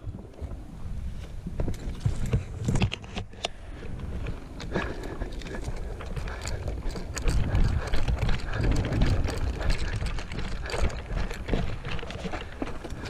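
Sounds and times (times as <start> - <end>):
wind rumble: 0.0 - 13.0
gear rattling: 1.6 - 13.0
footsteps: 3.9 - 13.0.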